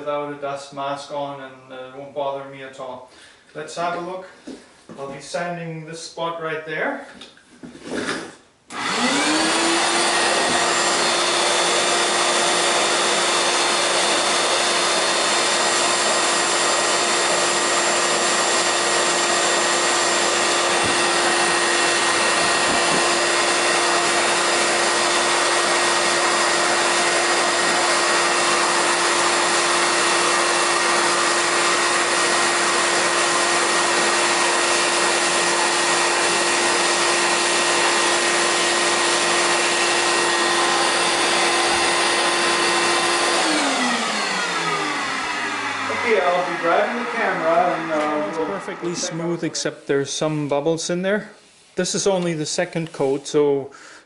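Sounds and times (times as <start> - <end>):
shop vac motor whine: 8.7 - 49.5.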